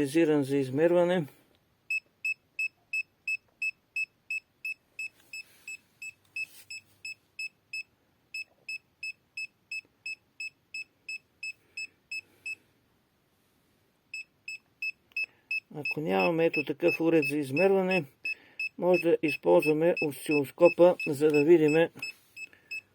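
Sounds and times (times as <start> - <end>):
meter alarm beeping: 14.2 - 22.9.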